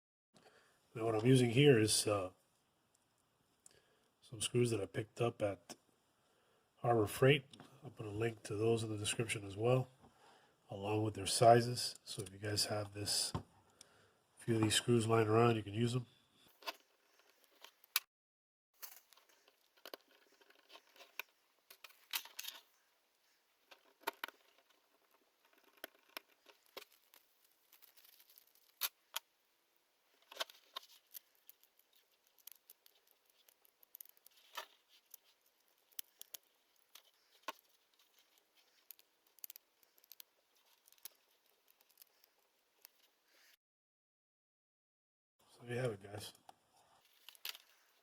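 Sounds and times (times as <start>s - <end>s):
small screws and plastic parts clicking: 16.6s - 18.1s, 18.8s - 22.8s, 23.6s - 29.4s, 30.1s - 43.2s, 46.4s - 48.0s.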